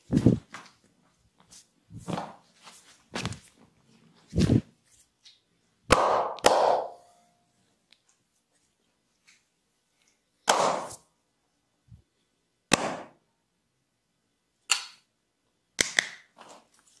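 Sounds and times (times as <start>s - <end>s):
massage smacks: 5.9s - 6.9s.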